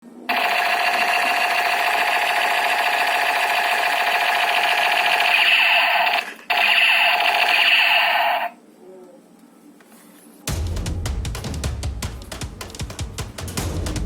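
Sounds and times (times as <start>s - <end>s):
toy shotgun buzzing rattle: 0.3s - 8.6s.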